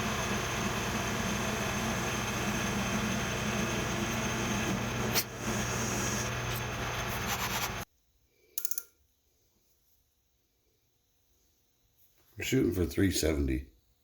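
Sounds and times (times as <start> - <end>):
machine tool humming: 0.0 - 7.8.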